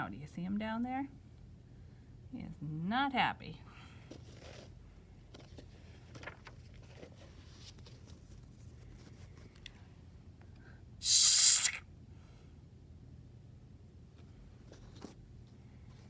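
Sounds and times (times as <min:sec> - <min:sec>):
faint rustles of book handling: 0:03.7 - 0:10.2, 0:14.0 - 0:16.0
paper page turning: 0:05.3 - 0:09.4.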